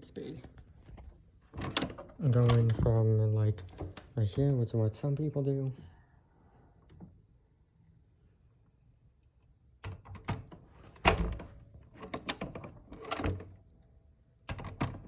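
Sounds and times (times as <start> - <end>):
door thudding shut and latching: 1.6 - 3.0, 9.9 - 13.4.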